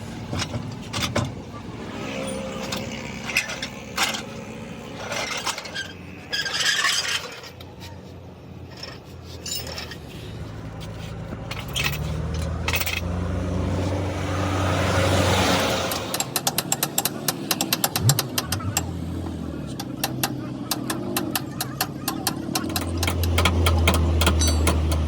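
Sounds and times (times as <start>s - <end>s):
engine humming: 0.0s - 25.0s
metal scrape: 1.8s - 13.2s
metal knocks: 17.4s - 19.0s.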